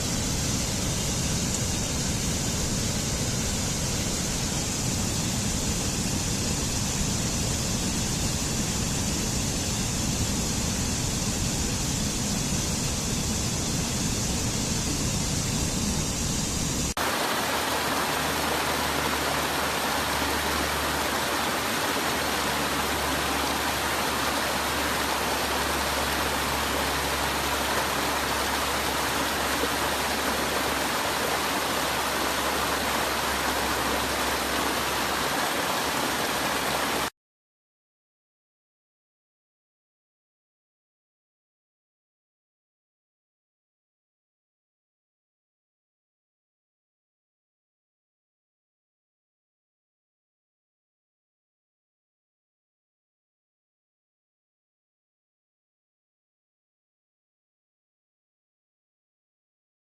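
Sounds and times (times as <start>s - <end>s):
waterfall rushing: 16.7s - 37.1s.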